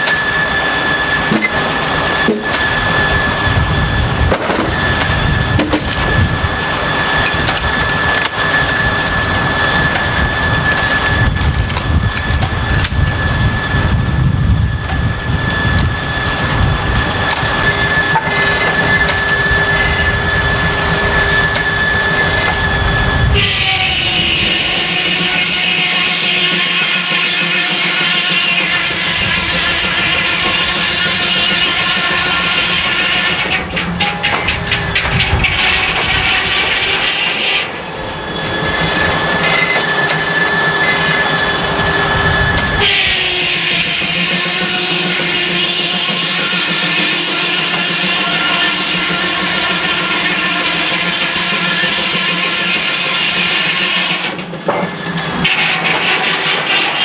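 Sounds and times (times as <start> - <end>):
circular saw cutting log: 15.6 - 57.0.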